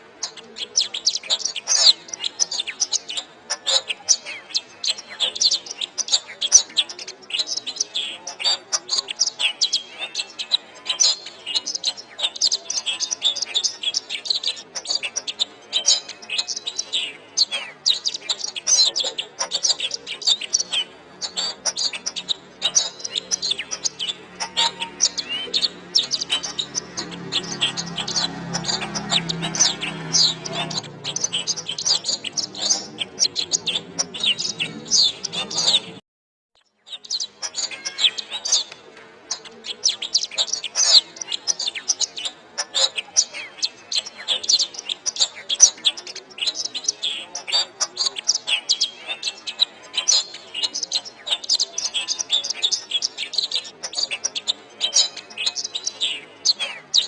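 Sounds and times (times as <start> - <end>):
canary singing: 0.0 - 36.0, 36.7 - 57.0.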